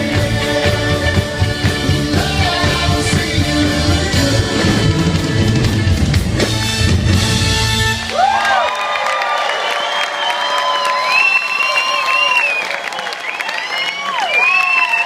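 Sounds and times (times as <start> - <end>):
person singing: 0.0 - 5.9
live band playing upbeat music: 0.0 - 8.1.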